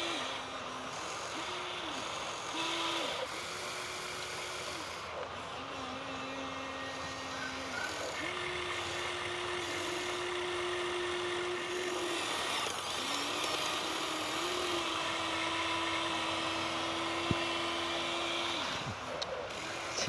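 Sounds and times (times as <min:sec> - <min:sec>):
small electric motor whining: 0:00.0 - 0:20.0.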